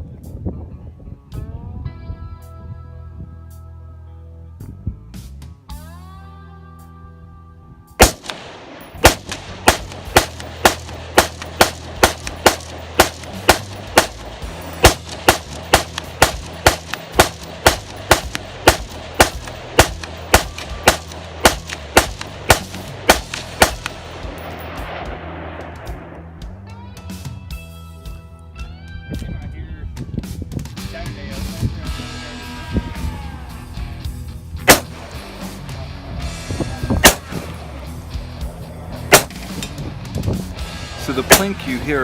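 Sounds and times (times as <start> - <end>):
background music: 1.3 - 29.2, 30.3 - 42.0
gunshots: 8.0 - 26.2, 34.7 - 35.3, 37.0 - 37.6, 39.1 - 39.7, 41.1 - 42.0.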